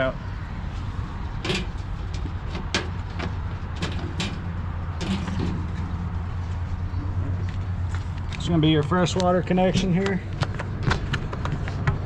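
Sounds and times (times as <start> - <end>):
low mechanical hum: 0.0 - 12.0
sharp clicks and knocks: 1.4 - 6.2.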